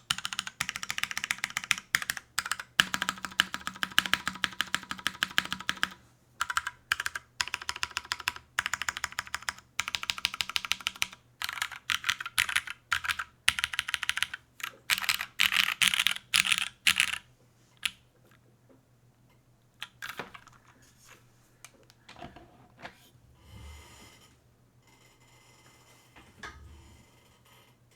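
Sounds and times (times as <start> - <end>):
mechanical keyboard typing: 0.0 - 17.2.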